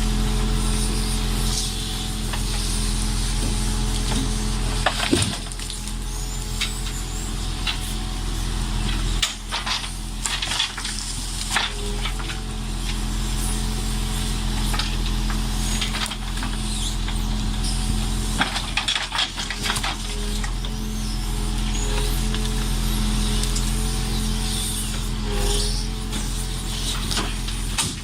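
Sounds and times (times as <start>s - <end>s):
loader crane engine running: 0.0s - 28.0s.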